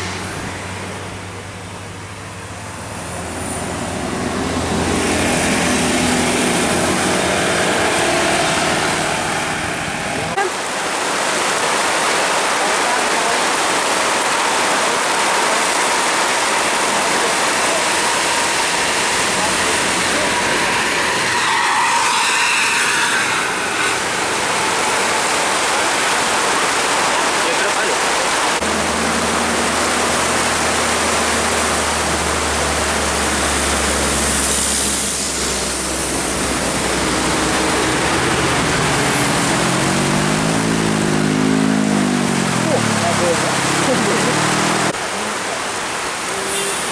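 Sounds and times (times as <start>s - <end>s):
approaching vehicle engine: 0.0s - 10.4s, 15.6s - 27.1s, 28.4s - 45.0s
vehicle engine drone: 0.0s - 11.8s, 13.6s - 46.9s
wet road spray: 0.0s - 46.9s
steady rain falling: 10.1s - 22.6s, 24.1s - 46.9s.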